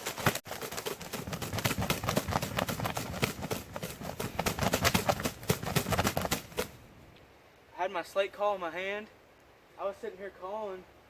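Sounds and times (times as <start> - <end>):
rustling and thudding in dry vegetation: 0.0 - 6.9.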